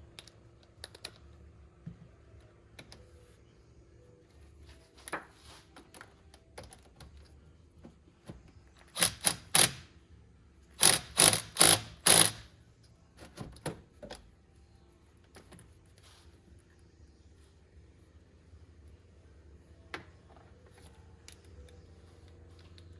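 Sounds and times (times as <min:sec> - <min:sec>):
ratchet clicking: 0:08.9 - 0:09.8, 0:10.8 - 0:12.5.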